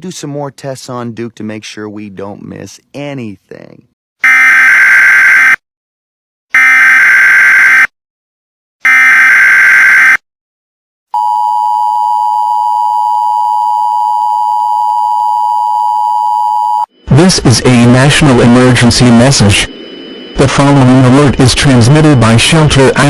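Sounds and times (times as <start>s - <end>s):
data tone bursts: 8.9s - 10.2s, 15.4s - 23.0s
two-tone attention signal: 11.2s - 23.0s.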